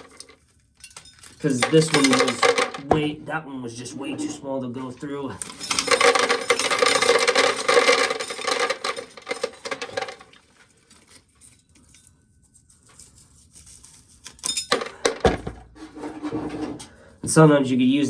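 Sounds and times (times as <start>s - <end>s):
corn kernels rattling while shelled: 0.0s - 2.9s, 5.3s - 11.4s
kernels pattering down: 0.0s - 2.9s.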